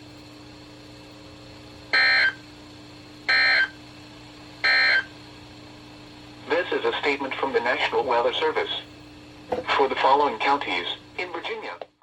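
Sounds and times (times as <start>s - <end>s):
faint radio hum: 6.4s - 12.0s.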